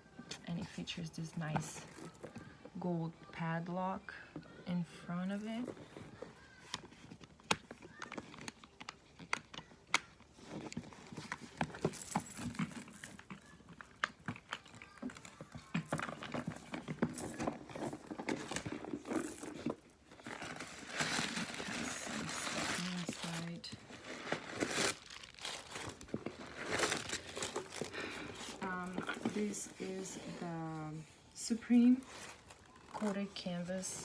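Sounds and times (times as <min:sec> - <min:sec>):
leather bag rustling: 0:10.4 - 0:34.0.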